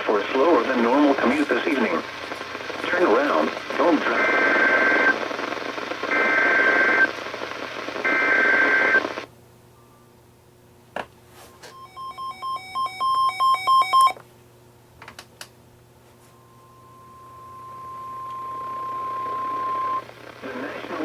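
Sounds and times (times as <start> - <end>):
radio static: 0.0 - 9.3, 17.1 - 21.0
electronic alarm beeps: 11.7 - 14.2.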